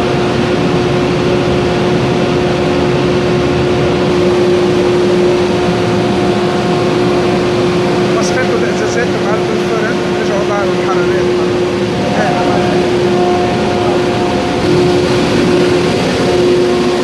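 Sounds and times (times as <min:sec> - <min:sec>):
constant low hum: 0:00.0 - 0:17.0
furnace burner rushing: 0:00.0 - 0:17.0.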